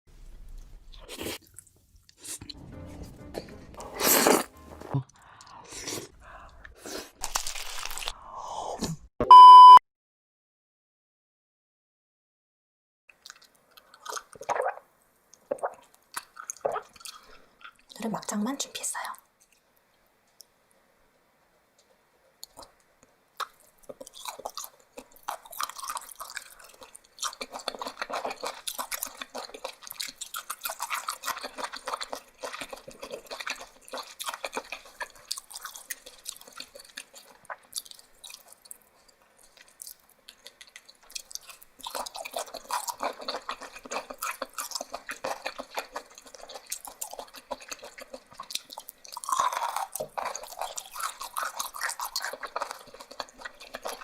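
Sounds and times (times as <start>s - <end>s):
wet chewing and crunching: 6.0s - 8.2s, 13.1s - 14.8s, 15.4s - 18.0s, 23.4s - 54.0s.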